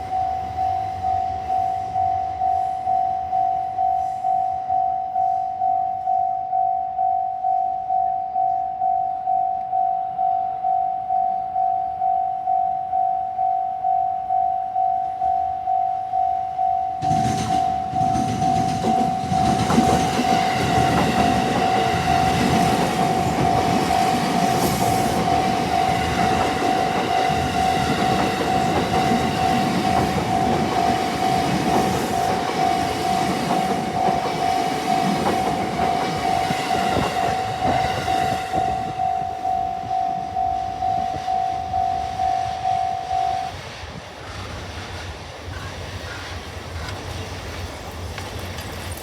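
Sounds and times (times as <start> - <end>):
level crossing warning bell: 0.0 - 43.6
train wheels clattering: 17.0 - 39.1, 44.2 - 49.0.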